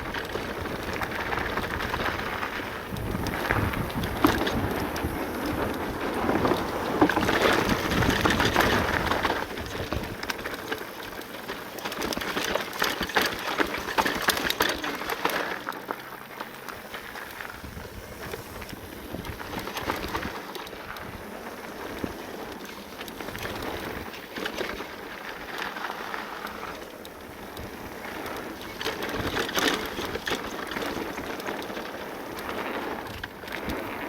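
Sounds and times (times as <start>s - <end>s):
wind on microphone: 0.0s - 10.3s
bike rattles and clicks: 0.0s - 34.0s
tyre noise on loose ground: 0.0s - 34.0s.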